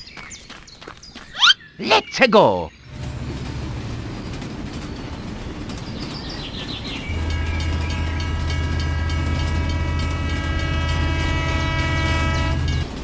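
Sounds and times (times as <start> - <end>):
steady horn-like tone: 7.2 - 12.8.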